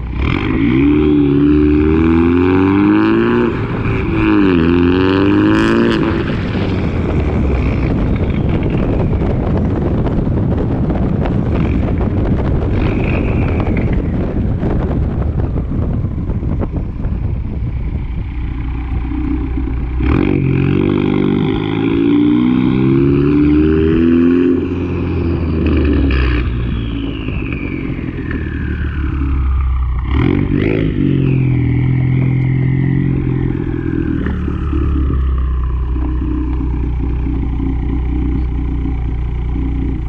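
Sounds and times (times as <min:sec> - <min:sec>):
car engine revving through gears: 0:00.2 - 0:09.2, 0:18.5 - 0:40.0.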